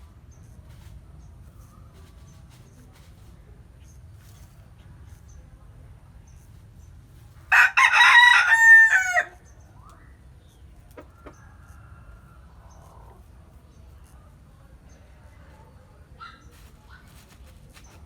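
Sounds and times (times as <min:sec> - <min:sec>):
rooster crowing: 0:07.5 - 0:09.4.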